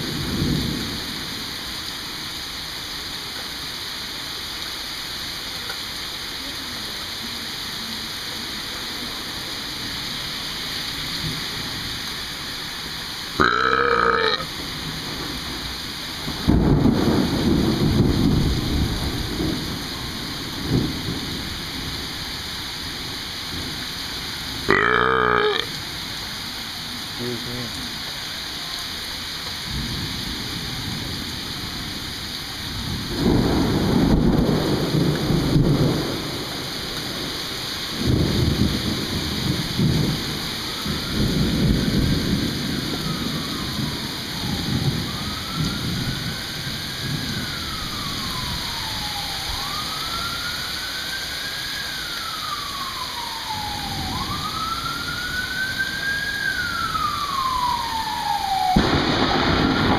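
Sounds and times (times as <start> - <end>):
steady rain: 0.0 - 59.9
wailing siren: 8.9 - 21.8, 24.7 - 26.0, 33.1 - 59.9
rolls of thunder: 13.4 - 22.0, 32.8 - 49.8, 56.8 - 59.9.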